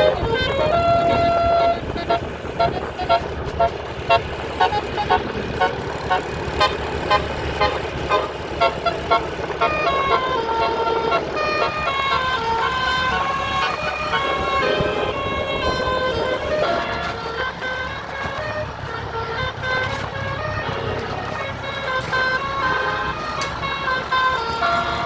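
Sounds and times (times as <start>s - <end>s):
bus musical air horn: 0.0s - 25.0s.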